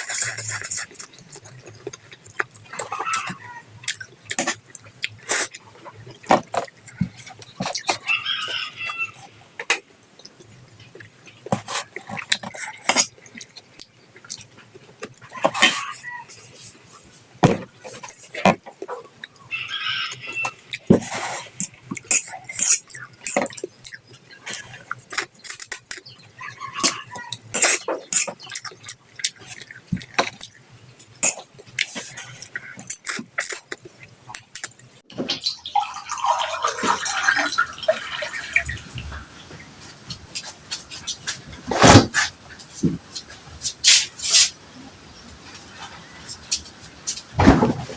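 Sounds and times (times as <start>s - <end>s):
wet mouth noises eating noodles: 0.0s - 7.9s, 10.3s - 17.0s
chicken clucking: 2.6s - 4.6s, 5.8s - 9.5s, 15.0s - 16.7s, 17.4s - 25.4s, 26.0s - 30.1s.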